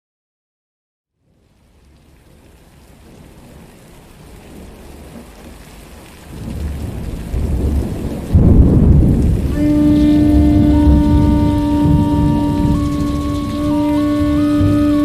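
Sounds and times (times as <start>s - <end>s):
rain hiss: 1.2s - 15.0s
rumbling thunder: 6.3s - 15.0s
flute long held note: 9.5s - 15.0s.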